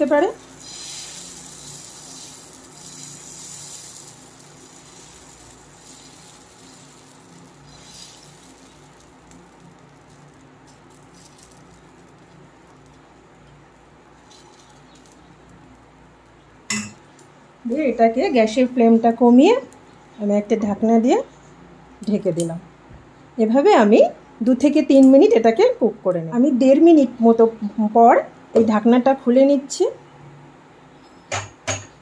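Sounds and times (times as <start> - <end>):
batter sizzling in a pan: 0.0 - 20.3.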